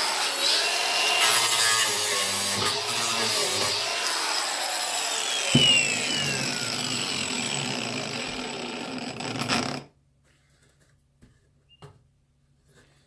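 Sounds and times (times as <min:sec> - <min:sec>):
angle grinder cutting wood: 0:00.0 - 0:09.9.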